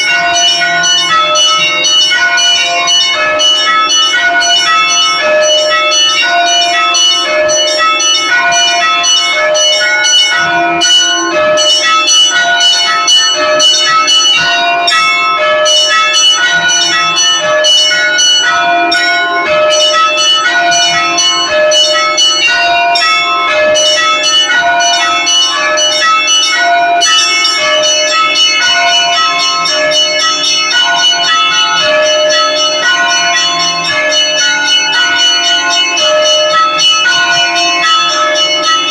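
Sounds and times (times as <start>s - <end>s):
large deep bells ringing: 0.0s - 38.9s
small high bells ringing: 0.0s - 38.9s.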